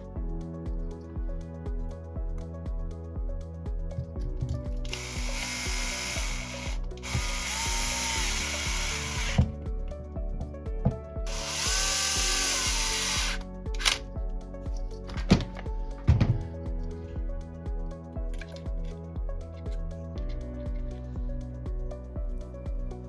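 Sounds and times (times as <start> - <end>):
background music: 0.0 - 23.0
power drill running: 4.8 - 9.5, 11.3 - 14.0.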